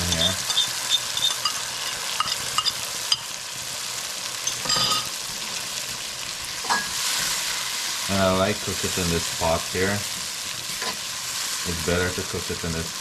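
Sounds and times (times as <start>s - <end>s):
spoon scraping a pot: 0.0s - 3.3s
spice paste sizzling in oil: 0.0s - 13.0s.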